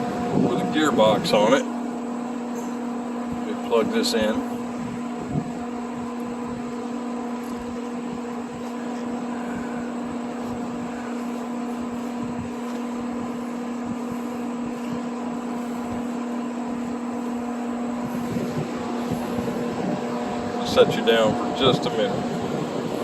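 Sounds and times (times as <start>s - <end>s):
electric motor hum: 0.0s - 23.0s.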